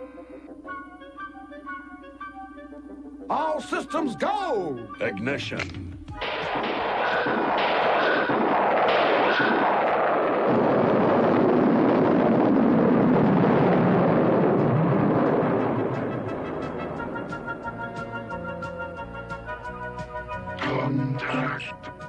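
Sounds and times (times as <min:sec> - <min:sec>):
rocket engine roar: 0:06.2 - 0:18.6.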